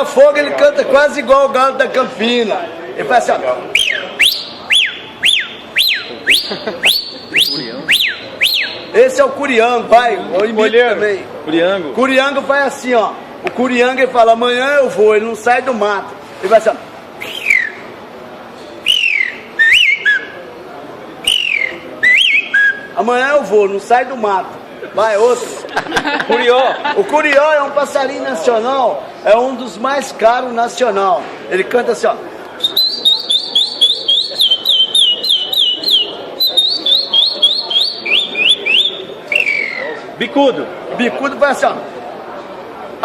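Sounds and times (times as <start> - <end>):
man whistling bird call: 3.7 - 8.9, 17.2 - 17.9, 18.8 - 20.4, 21.2 - 23.0, 32.6 - 40.0.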